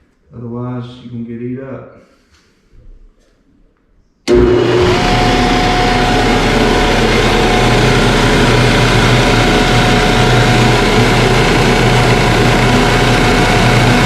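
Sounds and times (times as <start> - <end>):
floor sander motor whining: 4.3 - 14.0.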